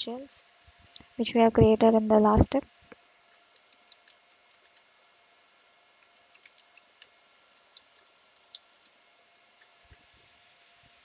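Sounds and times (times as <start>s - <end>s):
keyboard and mouse clicks: 3.5s - 4.8s, 6.0s - 9.0s.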